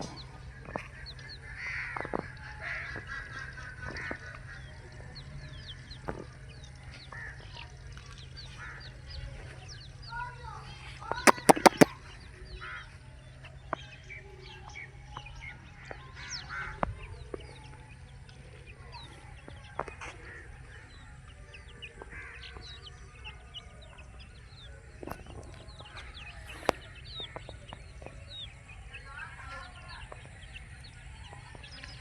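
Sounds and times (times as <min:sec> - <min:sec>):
baby chicks peeping: 0:11.3 - 0:11.9
sharp clicks: 0:11.3 - 0:11.9.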